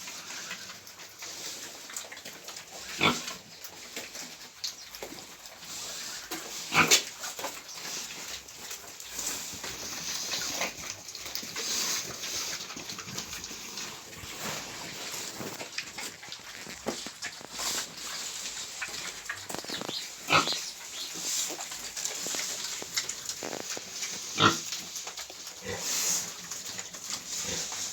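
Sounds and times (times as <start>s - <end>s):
pigs grunting and calling: 2.6s - 3.5s, 5.7s - 7.2s, 7.8s - 26.1s.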